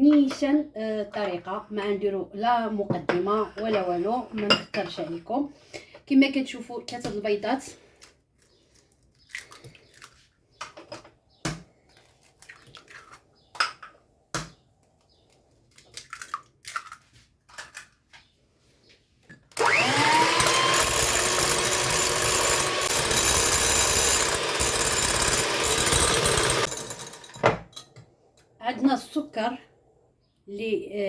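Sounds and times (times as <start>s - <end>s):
eggs cracking into a bowl: 15.7s - 17.9s
electric mixer whining: 19.6s - 27.4s.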